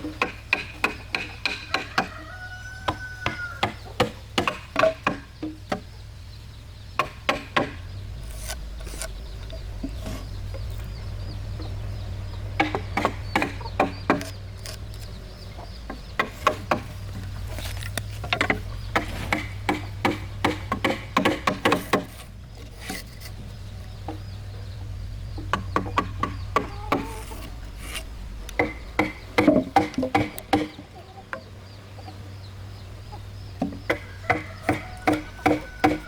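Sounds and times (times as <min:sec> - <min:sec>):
hammer striking wood: 0:00.0 - 0:02.2, 0:02.9 - 0:05.9, 0:07.0 - 0:09.1, 0:12.6 - 0:14.8, 0:15.8 - 0:17.2, 0:18.0 - 0:22.2, 0:25.4 - 0:30.8, 0:33.6 - 0:36.0
chickens clucking: 0:00.0 - 0:36.0
low steady hum: 0:02.6 - 0:36.0.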